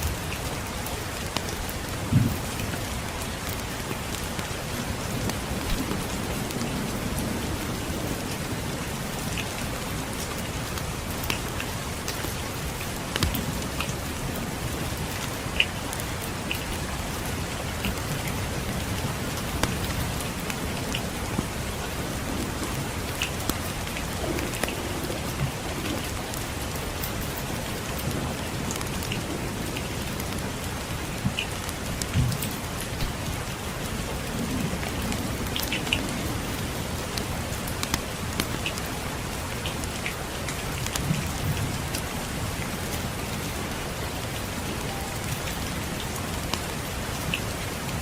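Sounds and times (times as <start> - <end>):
steady rain: 0.0 - 48.0
distant thunder rumble: 1.9 - 3.3, 4.2 - 26.6
wood fire crackling: 11.1 - 21.1.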